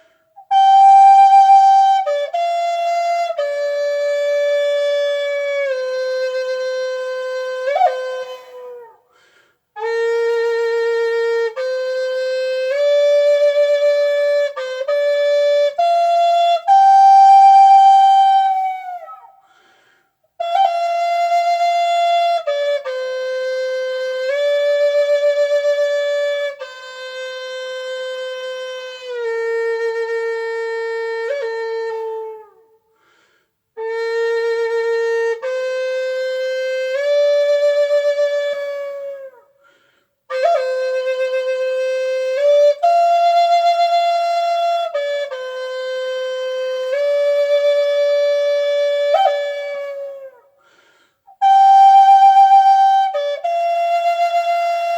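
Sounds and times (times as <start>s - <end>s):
solo flute slow melody: 0.0s - 54.9s.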